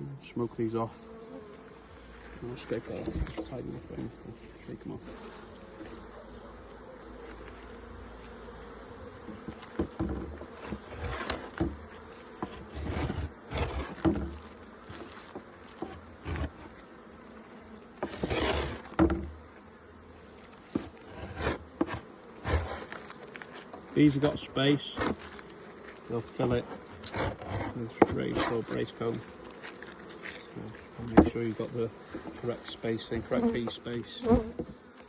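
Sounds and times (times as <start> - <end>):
honeybees buzzing: 0.0 - 35.0
knocks on wooden frames: 9.2 - 11.8, 18.0 - 19.4, 31.2 - 31.4
comb scraped off frames: 9.3 - 16.8, 18.0 - 19.0, 20.5 - 33.7.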